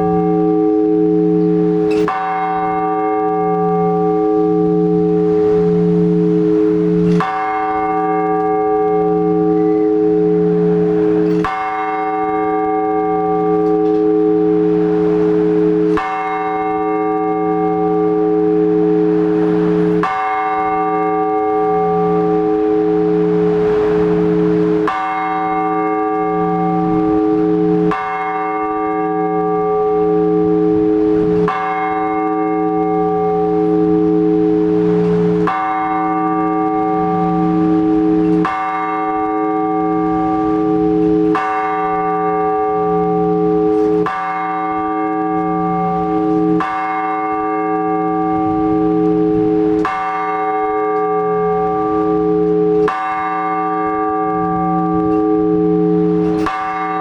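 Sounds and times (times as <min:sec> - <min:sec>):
large church bell tolling: 0:00.0 - 0:57.0.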